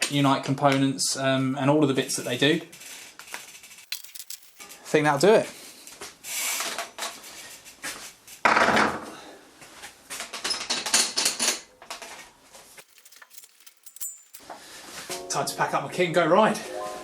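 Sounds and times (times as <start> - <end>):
tools clicking and clattering: 3.8 - 4.7, 12.8 - 14.4
loud rattle: 12.8 - 14.4.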